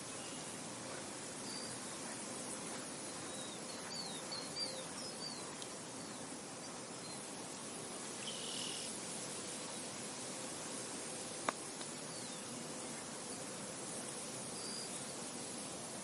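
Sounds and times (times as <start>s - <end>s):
insect buzz: 0.0s - 16.0s
wind hiss: 0.0s - 16.0s
bird chirping: 2.9s - 7.2s.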